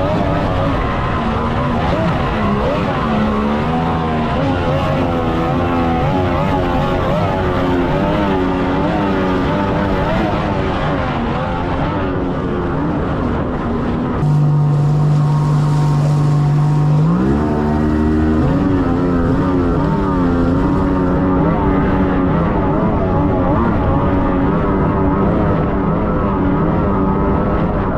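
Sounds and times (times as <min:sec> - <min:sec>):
outboard motor running hard: 0:00.0 - 0:27.9.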